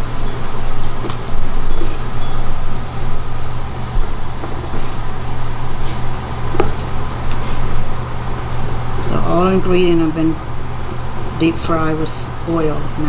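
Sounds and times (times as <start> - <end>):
low mechanical hum: 0.0 - 13.0.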